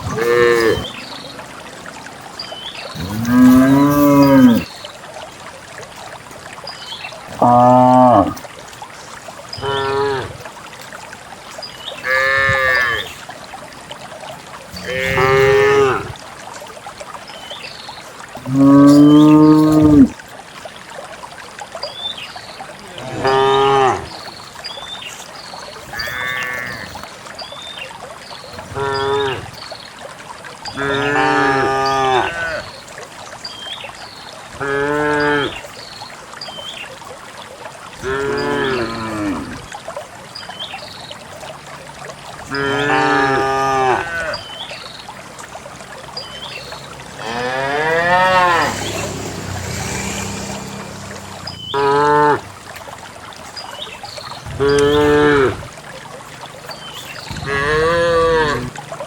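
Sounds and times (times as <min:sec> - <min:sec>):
cows mooing: 0:00.0 - 0:00.9, 0:03.0 - 0:04.7, 0:07.4 - 0:08.4, 0:09.6 - 0:10.4, 0:12.0 - 0:13.1, 0:14.7 - 0:16.1, 0:18.5 - 0:20.1, 0:23.0 - 0:24.1, 0:25.9 - 0:27.0, 0:28.7 - 0:29.4, 0:30.7 - 0:32.6, 0:42.5 - 0:44.4, 0:47.1 - 0:52.5, 0:57.4 - 0:58.7.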